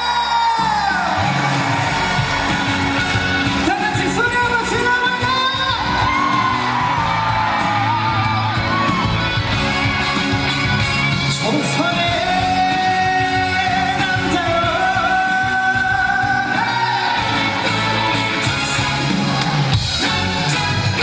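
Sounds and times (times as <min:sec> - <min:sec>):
people yelling: 0:00.0 - 0:09.8, 0:14.8 - 0:21.0
trot music over sound system: 0:00.0 - 0:21.0.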